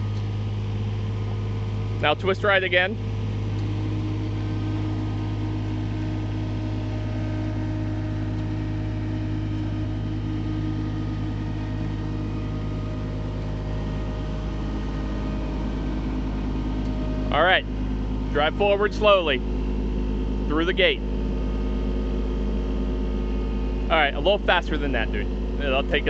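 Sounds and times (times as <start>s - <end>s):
engine drone: 0.0s - 26.0s.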